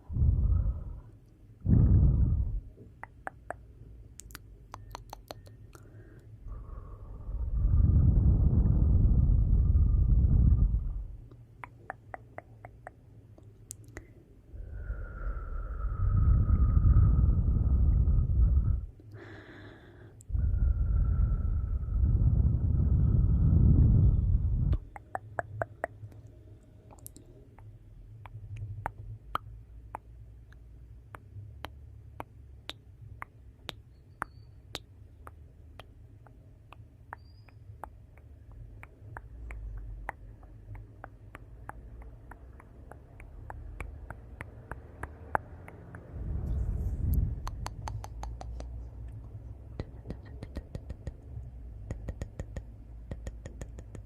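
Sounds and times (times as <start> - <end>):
low rumble of flames: 0.0 - 2.8, 6.4 - 11.3, 14.6 - 19.0, 20.3 - 24.8, 46.1 - 47.8.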